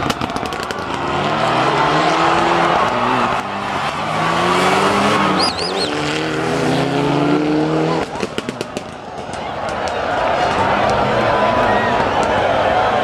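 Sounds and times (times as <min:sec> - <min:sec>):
car engine revving hard: 0:00.2 - 0:08.8
high warbling whistle: 0:05.2 - 0:06.1.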